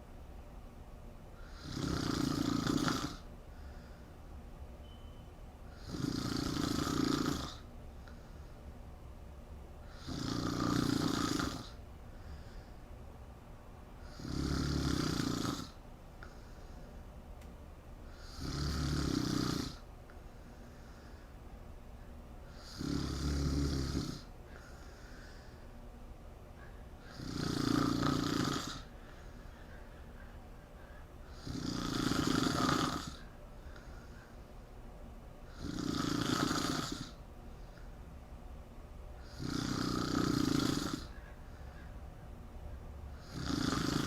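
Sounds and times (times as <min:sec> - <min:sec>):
woman snoring loudly: 0:01.4 - 0:03.3, 0:05.7 - 0:07.7, 0:09.9 - 0:11.8, 0:14.0 - 0:15.8, 0:18.1 - 0:19.8, 0:22.5 - 0:24.3, 0:27.0 - 0:28.9, 0:31.3 - 0:33.3, 0:35.5 - 0:37.2, 0:39.2 - 0:41.2, 0:43.2 - 0:44.0
faint breaths: 0:03.1 - 0:04.8, 0:07.4 - 0:10.5, 0:11.6 - 0:14.8, 0:15.6 - 0:18.5, 0:19.7 - 0:22.9, 0:24.2 - 0:32.1, 0:32.9 - 0:35.8, 0:37.0 - 0:40.2, 0:40.8 - 0:43.6.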